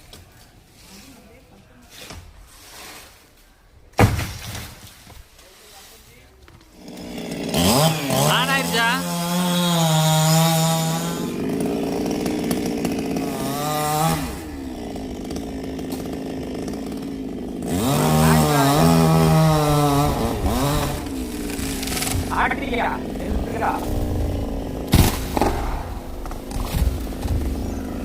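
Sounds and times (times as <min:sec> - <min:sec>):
chainsaw revving and idling: 0:06.6 - 0:28.0.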